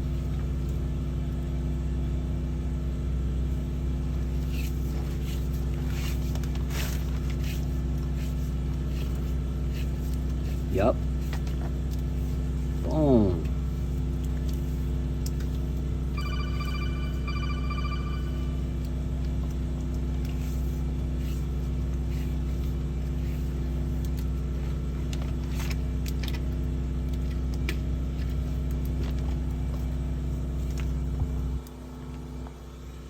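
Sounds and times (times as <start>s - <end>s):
engine and pressure pump running: 0.0s - 33.0s
high pitched pulsing tone: 16.2s - 18.8s.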